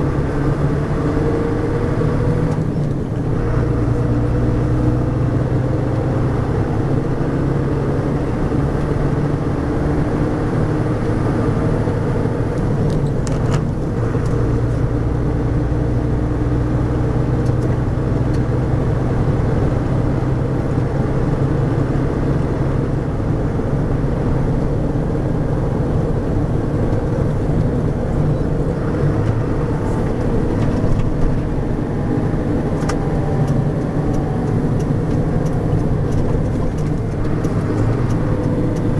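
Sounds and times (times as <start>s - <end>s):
diesel truck engine running: 0.0s - 38.9s
gearbox whine: 27.0s - 38.9s.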